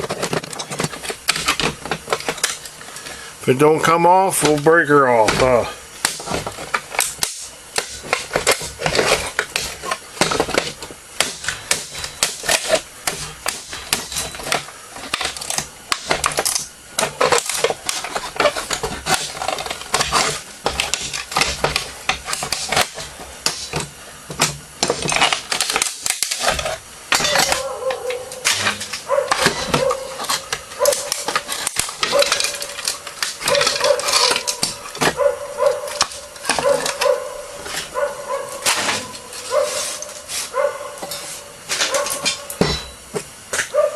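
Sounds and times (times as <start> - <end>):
plastic and metal parts clattering: 0.0 - 3.2, 3.8 - 43.8
dog whining: 27.1 - 31.3, 33.4 - 41.0.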